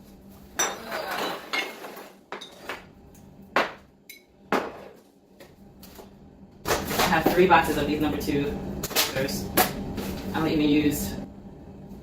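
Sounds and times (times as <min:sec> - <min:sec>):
jars and bottles knocking and clinking: 0:00.6 - 0:02.8.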